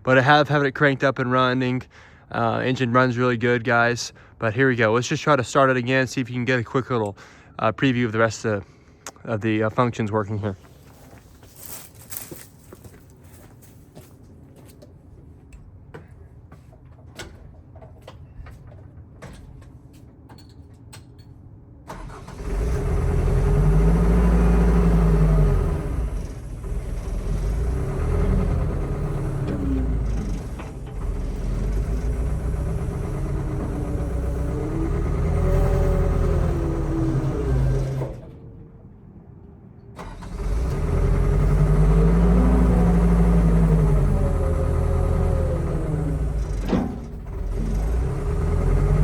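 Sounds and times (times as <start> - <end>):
excavator diesel engine running: 21.9 - 38.8, 40.0 - 49.0.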